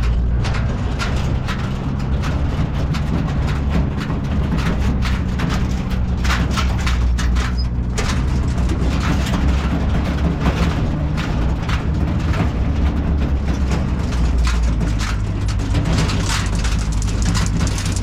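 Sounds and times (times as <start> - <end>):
clicks and rattles: 0.0 - 18.0
engine humming: 0.0 - 18.0.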